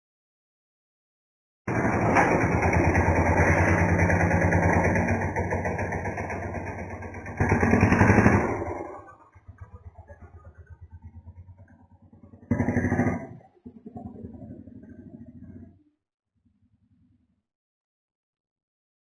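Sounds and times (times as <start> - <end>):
motor engine running: 1.7 - 15.8.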